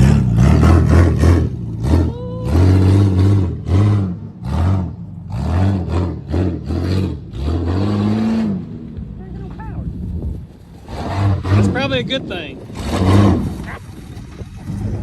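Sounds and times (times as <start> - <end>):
vehicle engine revving in bursts: 0.0 - 8.9, 10.9 - 13.8.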